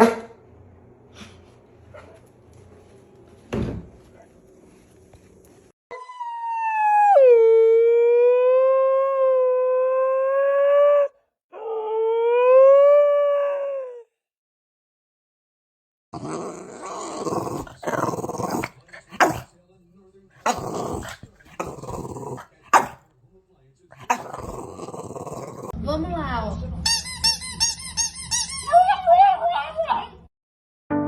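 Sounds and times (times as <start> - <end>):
dog howling: 16.5 - 19.4, 24.0 - 25.8.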